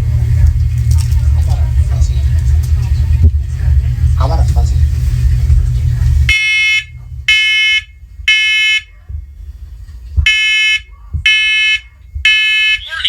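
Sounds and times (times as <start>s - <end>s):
smoke alarm beeps: 6.3s - 9.0s, 10.3s - 13.0s.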